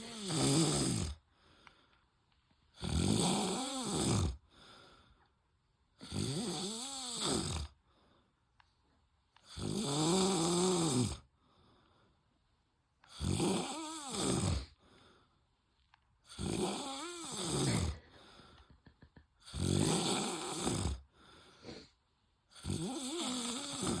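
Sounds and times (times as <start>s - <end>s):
man snoring: 0.0s - 1.2s, 2.8s - 4.4s, 6.0s - 7.8s, 9.4s - 11.3s, 13.1s - 14.8s, 16.3s - 18.4s, 19.4s - 21.9s, 22.5s - 24.0s
quiet breaths: 0.0s - 24.0s.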